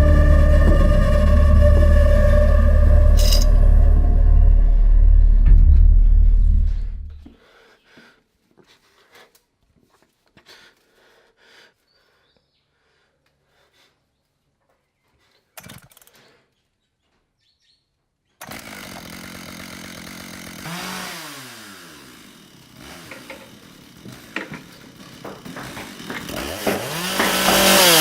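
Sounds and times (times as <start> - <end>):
chainsaw running: 0.0 - 5.0, 18.4 - 28.0.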